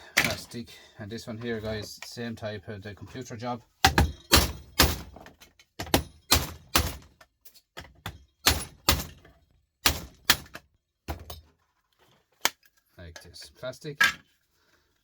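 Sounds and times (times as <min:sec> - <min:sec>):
hammer striking plastic casing: 0:03.8 - 0:07.2, 0:07.8 - 0:11.4.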